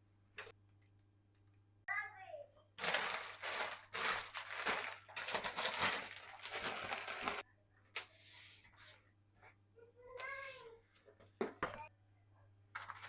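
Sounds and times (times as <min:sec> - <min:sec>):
bag rustling and crinkling: 0:02.8 - 0:07.4.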